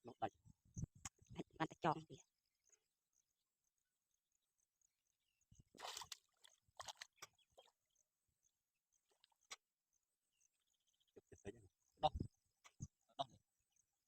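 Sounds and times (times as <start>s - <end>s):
water splashing and sloshing: 5.7s - 7.8s.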